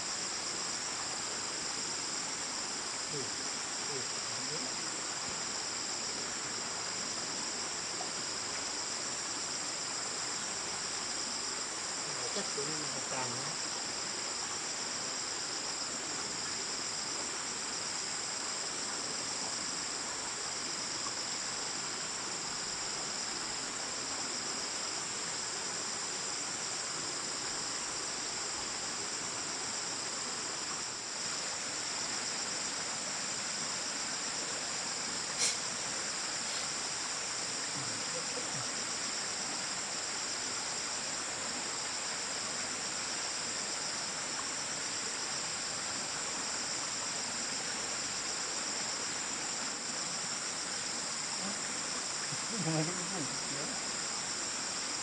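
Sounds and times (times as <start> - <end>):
insects trilling: 0.0 - 55.0.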